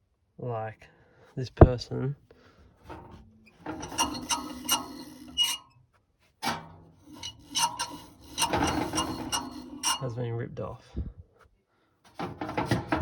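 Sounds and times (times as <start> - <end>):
tools rasping and scraping metal: 2.9 - 5.8, 6.4 - 10.2, 12.1 - 13.0.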